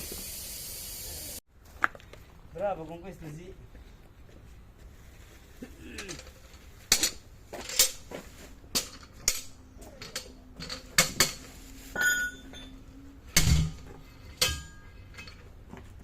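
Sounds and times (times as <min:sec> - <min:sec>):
metallic clanks and knocks: 0:08.7 - 0:11.4, 0:12.0 - 0:15.6.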